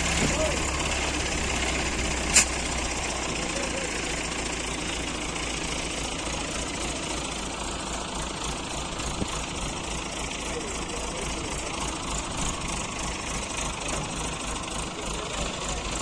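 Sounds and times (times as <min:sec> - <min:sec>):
heavy machine engine idling: 0:00.0 - 0:16.0
sharp click: 0:02.3 - 0:02.7.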